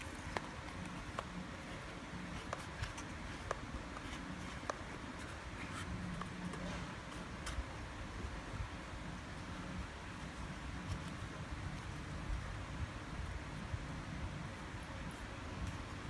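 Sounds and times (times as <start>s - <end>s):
light scratching: 0.0s - 8.3s
faint steady hum: 0.0s - 16.0s.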